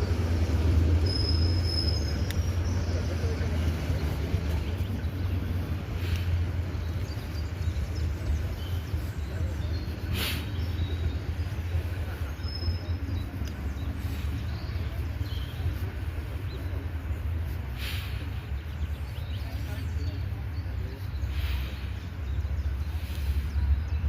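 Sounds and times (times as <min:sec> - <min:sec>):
vehicle engine idling: 0:00.0 - 0:24.0
short hissing bursts: 0:10.0 - 0:10.8, 0:17.7 - 0:18.5.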